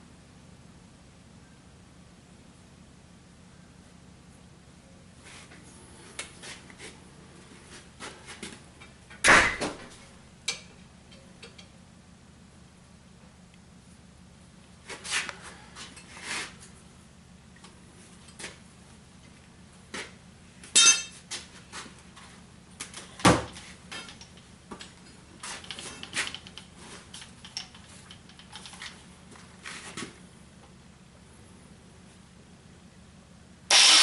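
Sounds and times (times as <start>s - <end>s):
ringing metal clang: 20.8s - 21.2s.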